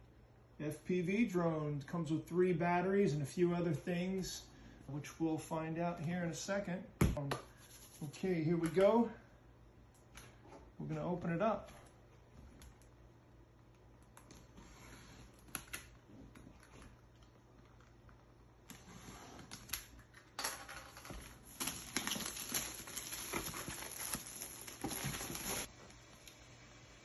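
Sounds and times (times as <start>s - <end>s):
packaging rustling and crinkling: 21.1s - 25.7s.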